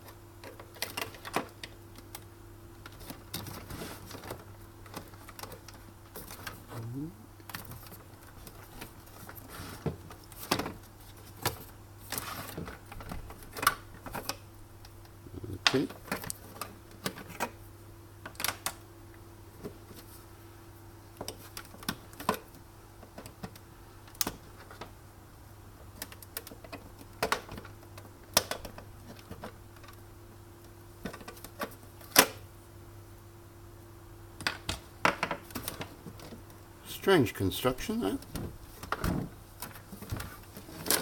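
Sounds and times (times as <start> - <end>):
steady low hum: 0.0 - 10.3, 13.2 - 17.0.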